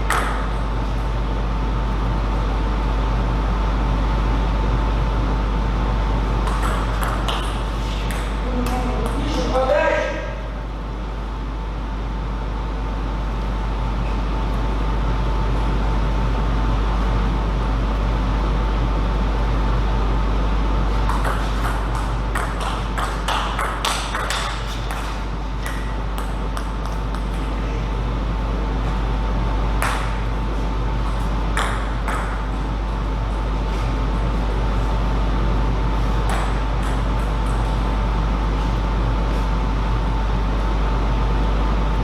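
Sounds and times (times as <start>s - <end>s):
steady low hum: 0.0s - 42.0s
table tennis ball clicks: 6.4s - 9.2s.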